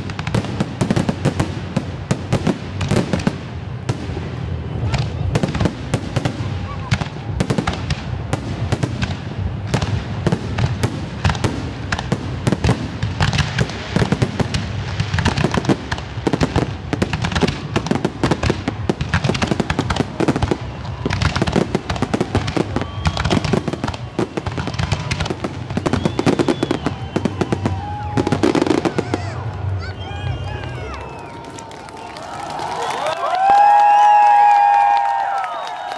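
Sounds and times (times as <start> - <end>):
fireworks bursts and bangs: 0.0 - 35.9
fireworks crackling: 0.0 - 35.9.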